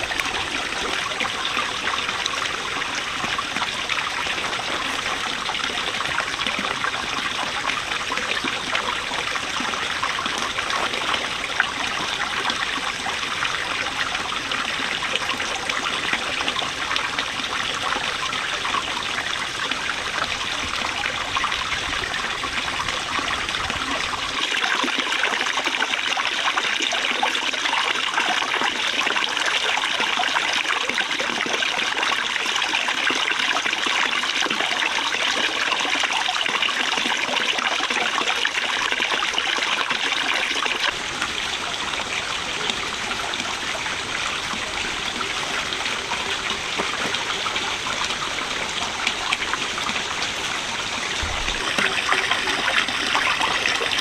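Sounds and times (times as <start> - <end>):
stream water trickling and splashing: 0.0 - 54.0
deep rumble: 50.3 - 54.0.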